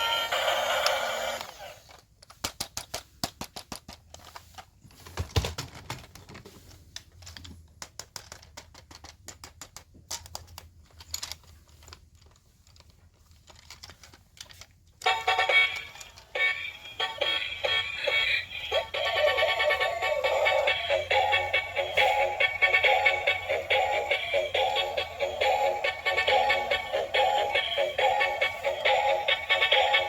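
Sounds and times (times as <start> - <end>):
music: 15.0 - 30.0.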